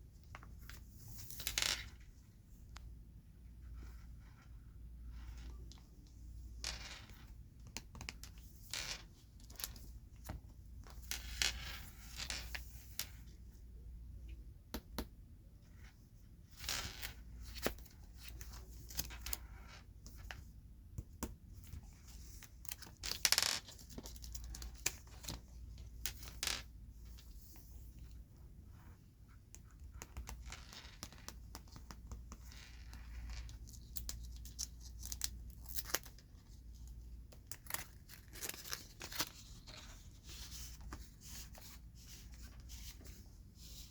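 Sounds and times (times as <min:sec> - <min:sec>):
hands handling cards: 0:29.5 - 0:43.9.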